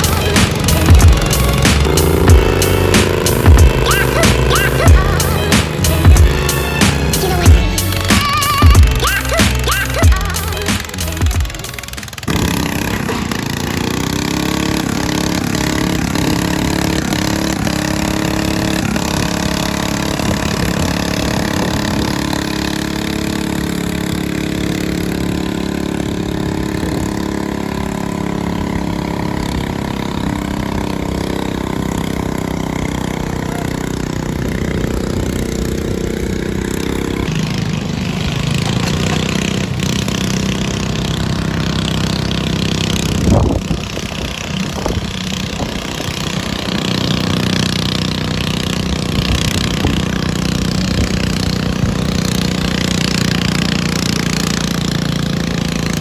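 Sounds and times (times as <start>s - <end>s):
tractor engine running under load: 0.0s - 56.0s.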